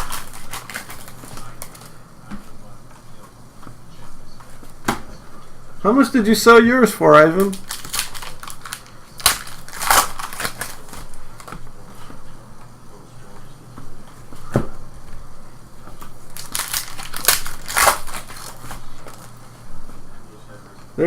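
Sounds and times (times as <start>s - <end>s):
card pack wrappers crinkling: 0.0s - 2.0s, 7.4s - 11.6s, 16.3s - 19.4s.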